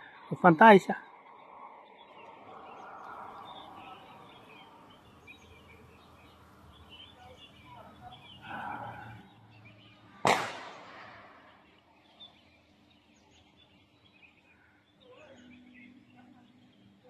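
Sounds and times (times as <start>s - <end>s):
bird chirps: 0.0s - 17.0s
faint outdoor background: 0.0s - 17.0s
sharp ringing bang: 10.2s - 11.3s.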